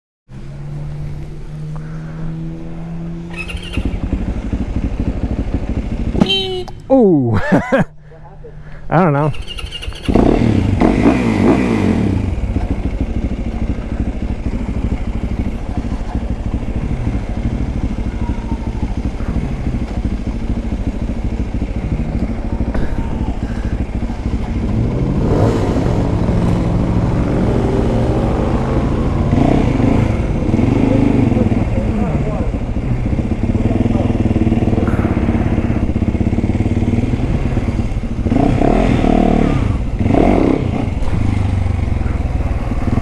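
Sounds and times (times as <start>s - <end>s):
dirt bike engine revving: 0.4s - 6.9s, 9.3s - 43.0s.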